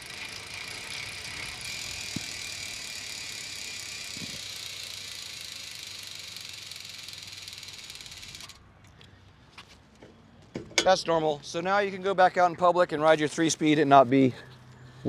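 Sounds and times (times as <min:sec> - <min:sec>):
bicycle hub ratchet clicking: 0:00.0 - 0:08.7.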